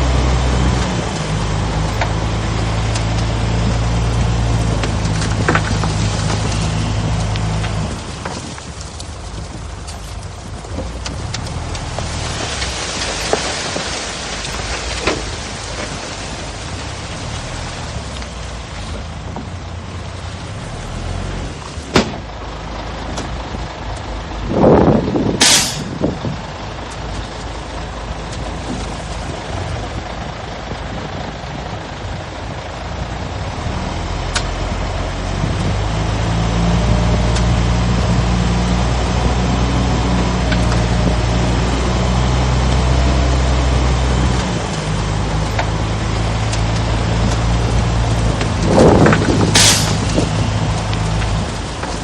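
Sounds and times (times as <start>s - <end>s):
deep engine: 0.0s - 52.0s
diesel machinery running: 0.0s - 52.0s
air brakes hissing: 25.4s - 25.9s, 49.6s - 50.0s.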